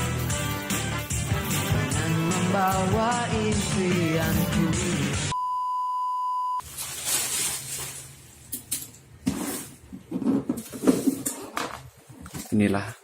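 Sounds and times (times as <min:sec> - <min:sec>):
steady electronic beep: 0:05.3 - 0:06.6.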